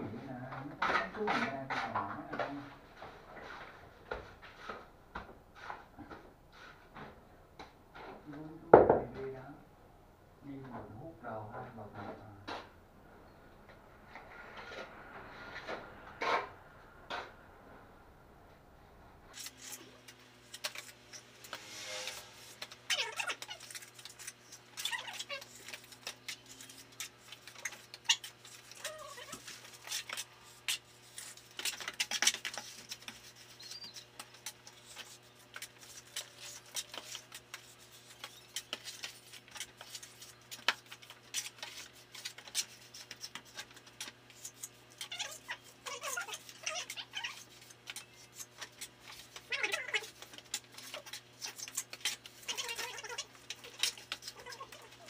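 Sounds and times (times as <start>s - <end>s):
trowel scraping cement render: 19.3s - 55.0s
trowel squeaking on surface: 19.3s - 55.0s.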